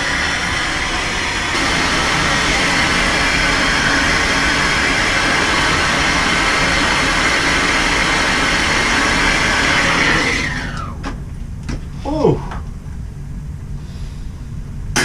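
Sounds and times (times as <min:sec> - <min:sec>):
torch flame hissing: 0:00.0 - 0:11.2.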